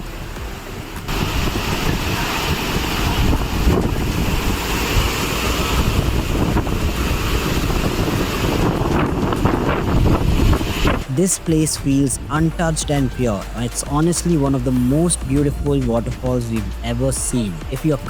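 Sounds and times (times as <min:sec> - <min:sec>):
waterfall rushing: 0:00.0 - 0:18.0
wind buffeting microphone: 0:00.2 - 0:12.6.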